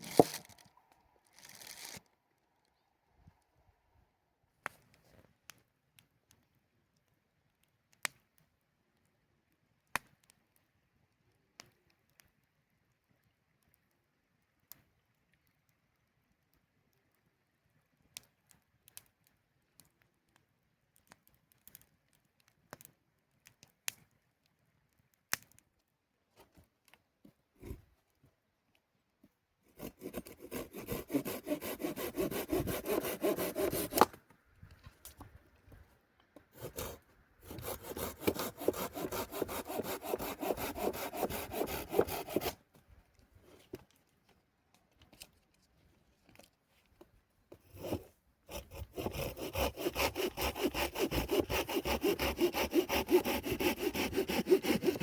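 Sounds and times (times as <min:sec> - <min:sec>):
hand saw cutting wood: 0:00.0 - 0:00.7, 0:01.4 - 0:02.1, 0:29.7 - 0:34.2, 0:36.6 - 0:42.6, 0:47.7 - 0:55.0.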